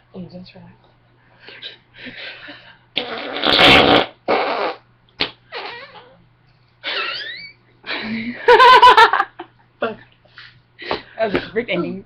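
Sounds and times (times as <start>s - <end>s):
person making fart noises: 3.0s - 6.2s, 6.9s - 7.6s.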